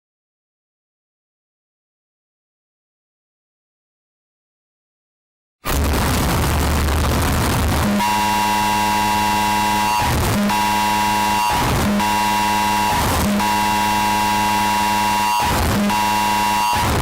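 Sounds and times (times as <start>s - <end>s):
distorted alarm tone: 5.7s - 17.0s
short noise bursts: 5.7s - 17.0s.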